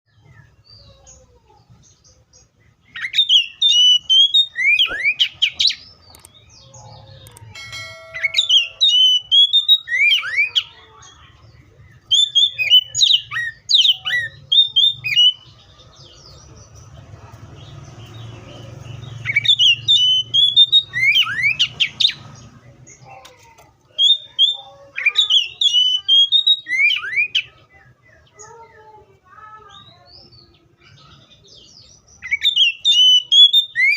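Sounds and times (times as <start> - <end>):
bird singing whistled notes: 7.3 - 10.6, 19.2 - 22.2, 24.0 - 27.5, 32.2 - 33.9.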